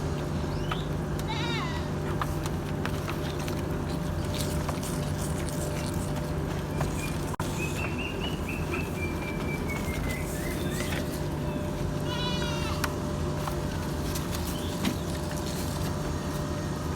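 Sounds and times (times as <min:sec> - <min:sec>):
steady low hum: 0:00.0 - 0:16.9
goat bleating: 0:01.2 - 0:02.0, 0:11.9 - 0:13.0.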